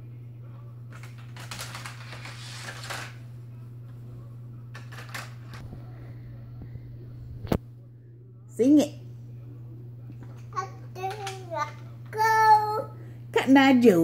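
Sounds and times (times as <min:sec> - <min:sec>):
toy cars clattering on racetrack: 0:01.0 - 0:03.2
low hum: 0:02.3 - 0:10.2.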